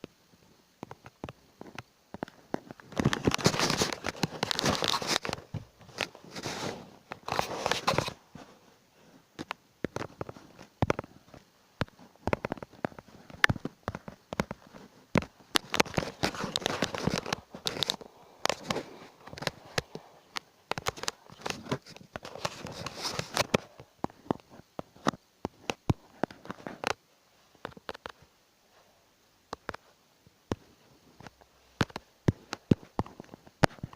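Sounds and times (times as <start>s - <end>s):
crinkling rustling: 0.4s - 33.9s
handling clicks and knocks: 9.4s - 27.0s.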